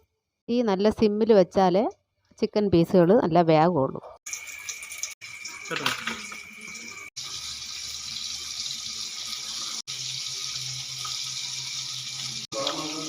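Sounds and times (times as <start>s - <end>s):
chicken deep-frying in oil: 4.3s - 13.0s.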